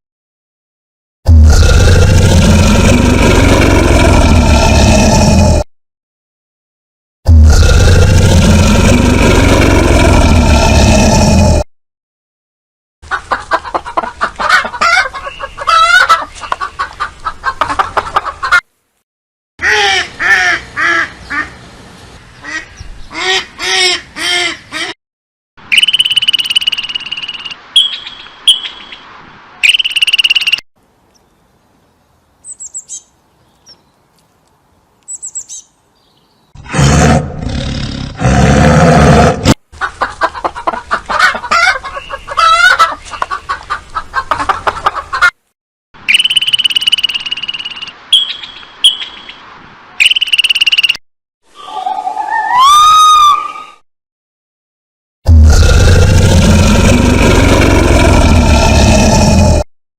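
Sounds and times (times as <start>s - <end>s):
bird calls: 25.7s - 29.0s, 29.6s - 34.1s, 35.0s - 36.6s, 39.8s - 45.3s, 46.1s - 49.4s, 50.0s - 51.0s
animal calls: 51.6s - 53.8s.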